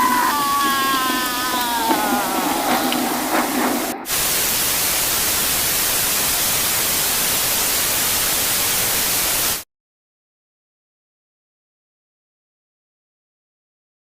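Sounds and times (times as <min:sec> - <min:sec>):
white noise static hiss: 0:03.0 - 0:09.6.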